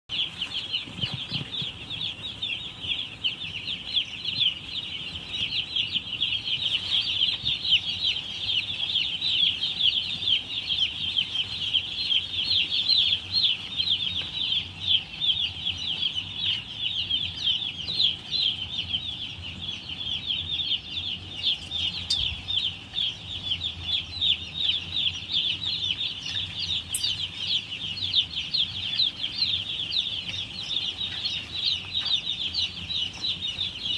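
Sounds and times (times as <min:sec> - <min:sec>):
chicks peeping: 0:00.1 - 0:33.9.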